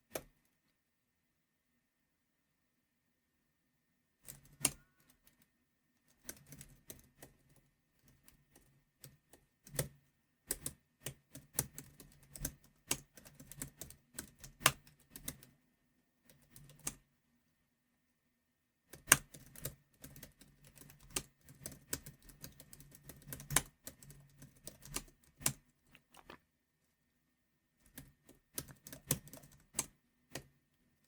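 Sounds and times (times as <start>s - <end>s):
computer keyboard keys clicking: 4.2s - 5.4s, 10.5s - 15.5s, 19.0s - 25.6s, 27.9s - 30.5s.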